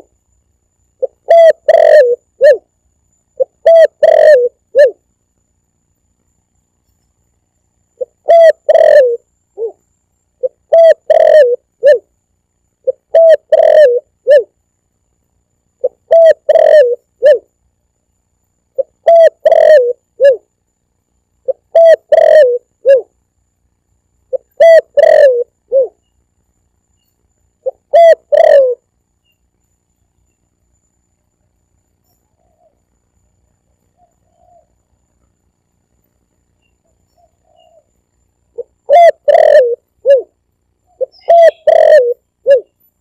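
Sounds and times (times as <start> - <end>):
dove cooing: 1.0 - 2.7, 3.4 - 5.0, 8.0 - 9.8, 10.4 - 12.1, 12.8 - 14.5, 15.8 - 17.5, 18.8 - 20.5, 21.4 - 23.1, 24.3 - 26.0, 27.6 - 28.9, 34.0 - 34.8, 37.0 - 37.9, 38.6 - 42.8.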